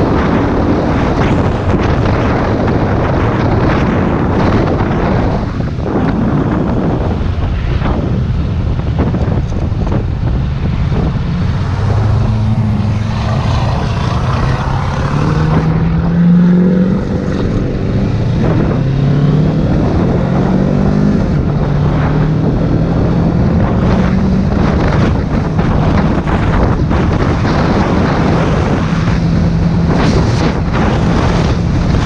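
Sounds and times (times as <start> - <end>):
wind buffeting microphone: 0.0 - 32.0
motorcycle engine accelerating: 8.8 - 32.0.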